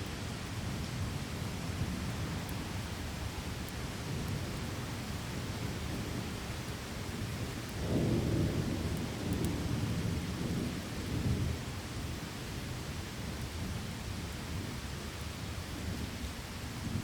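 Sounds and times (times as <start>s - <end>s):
steady rain: 0.0s - 17.0s
low rumble of thunder: 4.0s - 15.0s.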